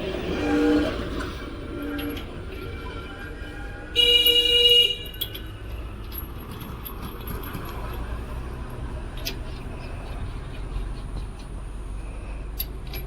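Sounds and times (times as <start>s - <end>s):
low rumble of traffic: 0.0s - 13.0s
vehicle horn honking: 3.6s - 5.3s.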